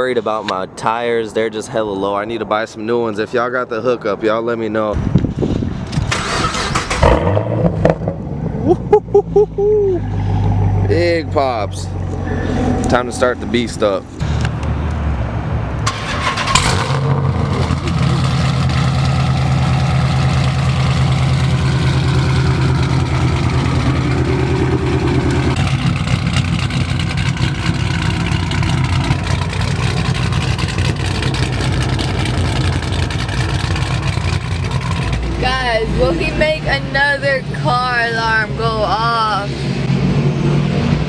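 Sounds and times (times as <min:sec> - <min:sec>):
engine sharp crack: 0:05.8 - 0:08.3, 0:15.8 - 0:35.5
car engine choppy idle: 0:17.6 - 0:35.8.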